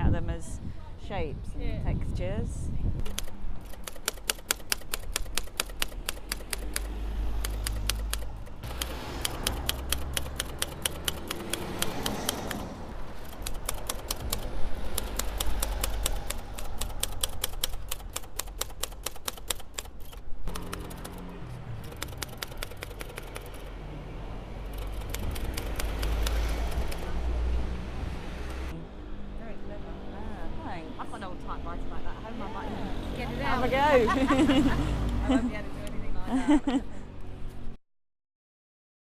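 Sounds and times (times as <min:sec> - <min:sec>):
typewriter keys striking: 0:03.1 - 0:23.7, 0:24.7 - 0:27.1.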